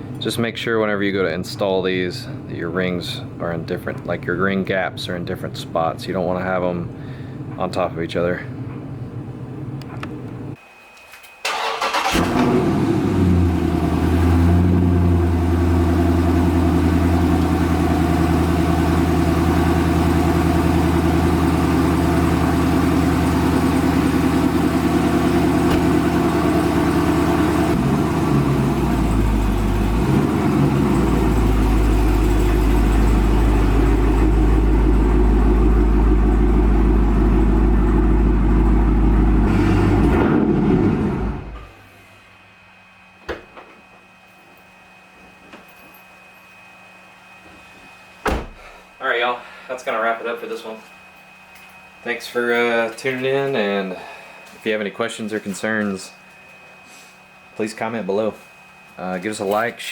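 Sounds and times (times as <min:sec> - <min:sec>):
car engine idling: 0:11.5 - 0:40.2.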